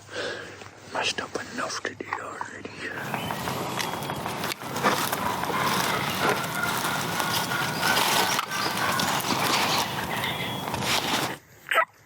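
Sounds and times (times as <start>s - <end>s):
box turkey call yelping: 3.0s - 11.4s.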